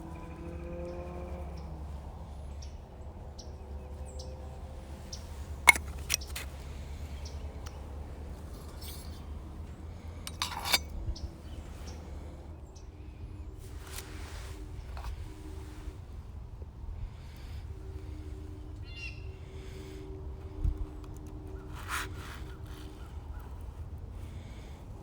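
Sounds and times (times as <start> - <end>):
faint bird chirps: 18.8 - 19.4.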